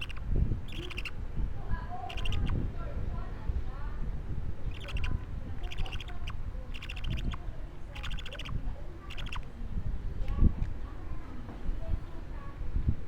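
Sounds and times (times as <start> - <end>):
budgerigar chick calling: 0.0 - 1.2, 2.0 - 2.6, 4.6 - 9.5.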